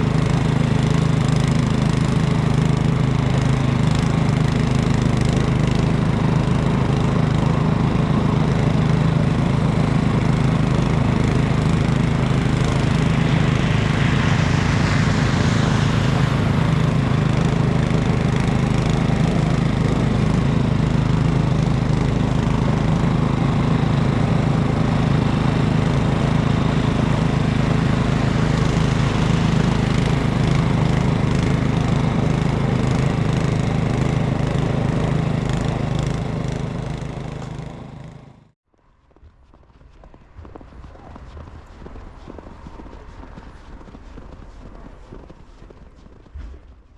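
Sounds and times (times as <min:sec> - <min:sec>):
snowblower engine running: 0:00.0 - 0:38.6, 0:39.9 - 0:46.4
hiss: 0:10.8 - 0:19.4, 0:25.6 - 0:32.4.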